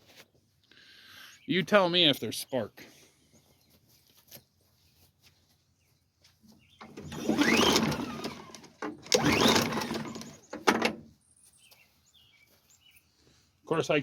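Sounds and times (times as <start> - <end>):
mower engine pull-cord whir: 6.7 - 11.1.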